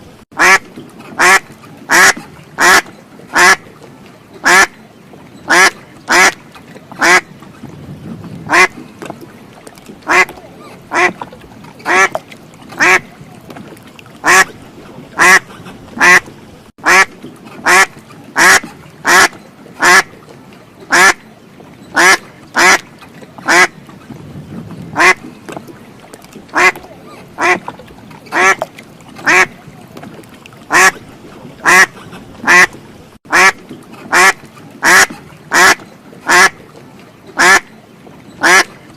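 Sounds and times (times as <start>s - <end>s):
duck quacking: 0.4s - 0.6s, 1.2s - 3.6s, 4.4s - 4.7s, 5.5s - 6.4s, 7.0s - 7.2s, 8.5s - 8.8s, 10.1s - 11.2s, 11.8s - 12.2s, 12.8s - 13.1s, 14.2s - 14.5s, 15.2s - 20.1s, 20.9s - 21.2s, 22.0s - 22.8s, 23.5s - 23.7s, 25.0s - 25.2s, 26.5s - 26.8s, 27.4s - 27.7s, 28.3s - 28.6s, 29.2s - 29.6s, 30.7s - 31.0s, 31.6s - 32.7s, 33.3s - 36.6s, 37.4s - 37.6s, 38.4s - 38.7s.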